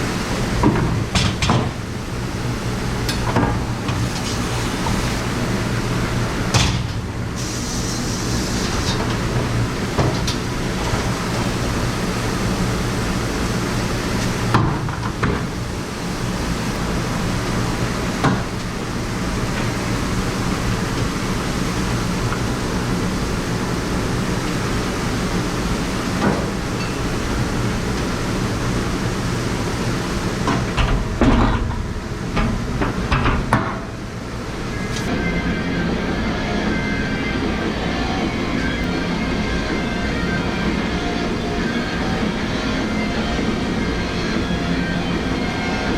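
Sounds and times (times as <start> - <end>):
kitchen machine hum: 0.0 - 45.9
dishes clattering: 26.7 - 27.2.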